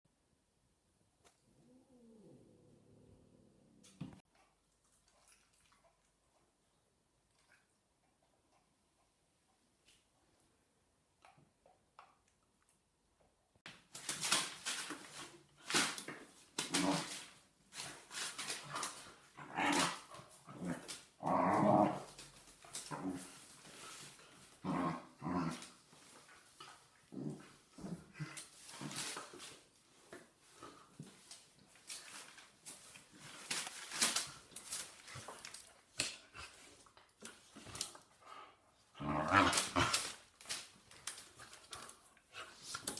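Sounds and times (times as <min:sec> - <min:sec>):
low-pitched dog vocalisation: 0:01.4 - 0:03.9
dogs growling in play: 0:01.4 - 0:04.2, 0:16.6 - 0:31.0, 0:34.1 - 0:42.9.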